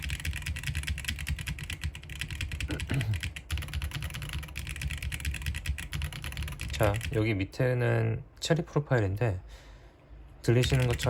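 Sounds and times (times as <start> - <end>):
fast mechanical keyboard typing: 0.0 - 7.2, 10.5 - 11.0.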